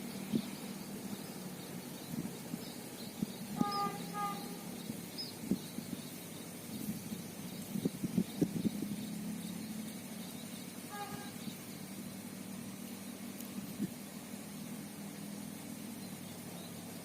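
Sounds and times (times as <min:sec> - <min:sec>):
faint high bird chirps: 0:00.0 - 0:12.2
steady low hum: 0:00.0 - 0:17.0.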